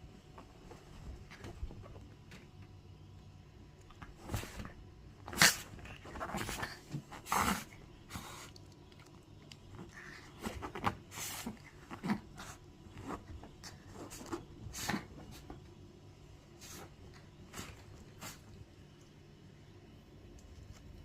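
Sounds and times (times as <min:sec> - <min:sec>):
dog sneezing: 0:05.3 - 0:05.8, 0:14.7 - 0:15.1.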